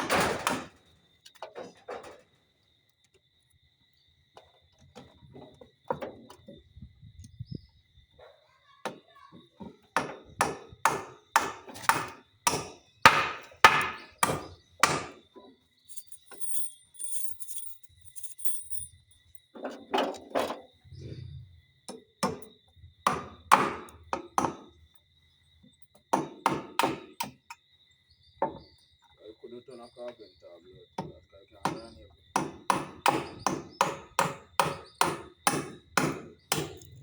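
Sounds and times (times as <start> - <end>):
hammer driving nails into wood: 10.0 - 15.2, 23.1 - 24.6, 26.1 - 27.4, 32.4 - 36.9.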